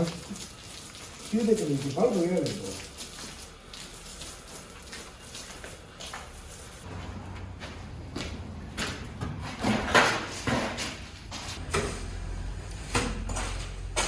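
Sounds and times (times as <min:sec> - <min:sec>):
scrapes and knocks: 0:06.9 - 0:14.0.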